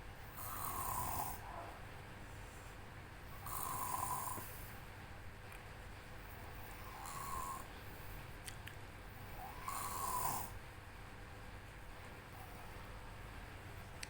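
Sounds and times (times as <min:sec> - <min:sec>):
child snoring heavily: 0:00.3 - 0:01.4, 0:03.4 - 0:04.7, 0:06.7 - 0:07.7, 0:09.4 - 0:10.6.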